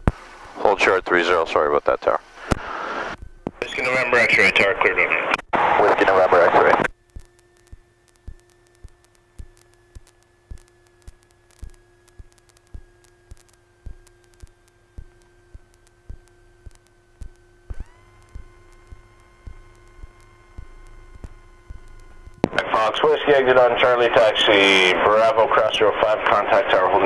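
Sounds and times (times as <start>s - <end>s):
high electrical tone: 0.0s - 27.0s
steady electrical hum: 0.0s - 27.0s
sharp radio clicks: 2.4s - 23.0s.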